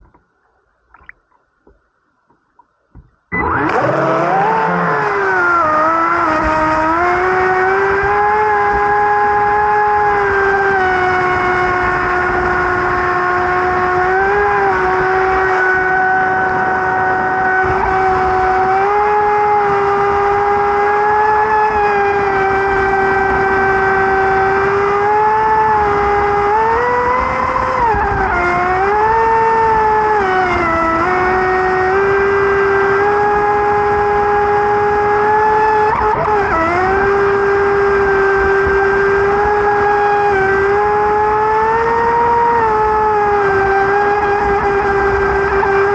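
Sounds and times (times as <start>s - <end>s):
model boat motor whining: 3.4s - 21.8s.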